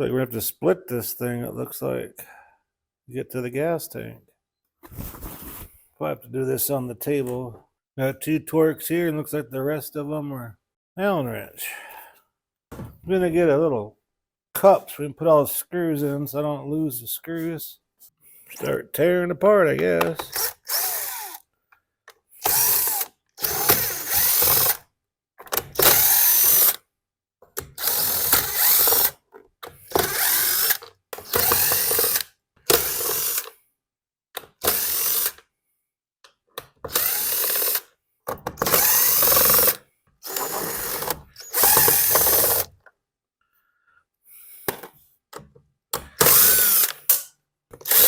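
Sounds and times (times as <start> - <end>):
power drill spinning out screws: 20.2 - 21.4, 22.4 - 24.8, 25.8 - 26.8, 27.6 - 29.2, 29.9 - 33.5, 34.6 - 35.4, 36.9 - 37.8, 38.6 - 42.7, 46.2 - 48.0.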